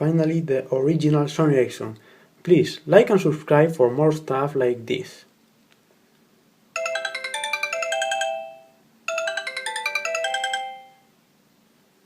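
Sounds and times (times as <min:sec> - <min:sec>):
mobile phone ringtone melody: 0:06.8 - 0:11.1.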